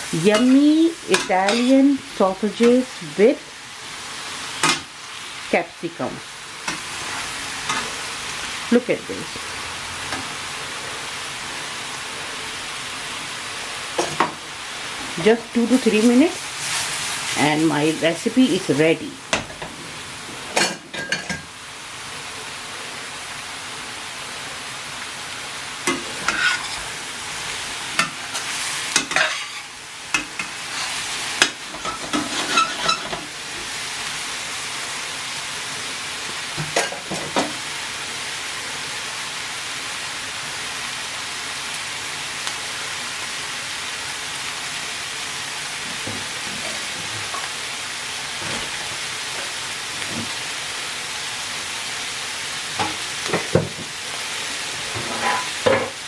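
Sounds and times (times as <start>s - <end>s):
food sizzling in a frying pan: 0.0s - 56.0s
spatula scraping and clattering: 25.9s - 26.9s, 28.0s - 33.2s, 54.9s - 56.0s.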